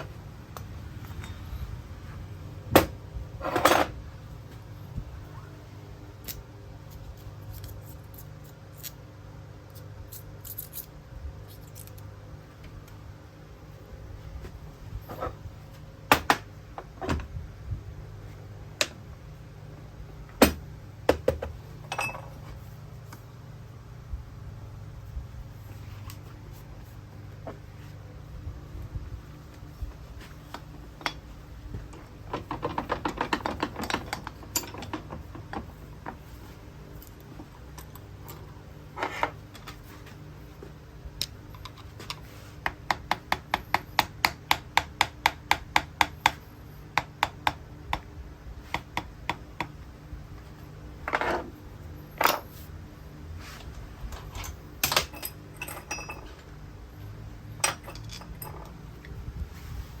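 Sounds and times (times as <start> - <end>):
metal tools clinking and knocking: 21.8 - 22.5, 32.3 - 35.7, 54.1 - 56.5, 57.5 - 58.9.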